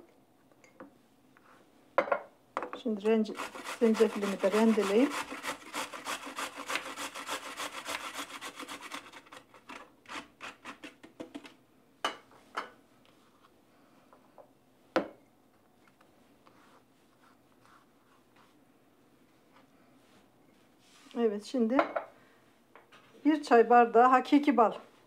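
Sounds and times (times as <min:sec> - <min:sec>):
ginger rasping on a grater: 0:03.3 - 0:11.0.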